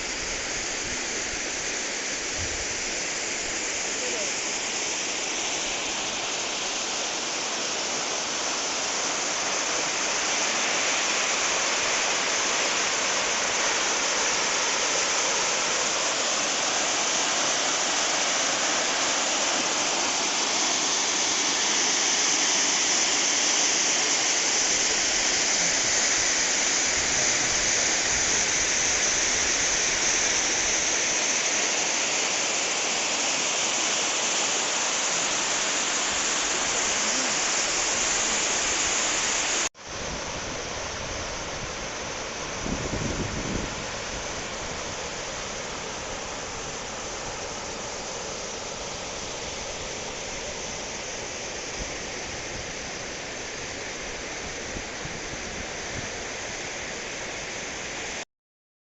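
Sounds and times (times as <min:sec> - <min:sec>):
stream rushing over rocks: 0:00.0 - 0:58.2.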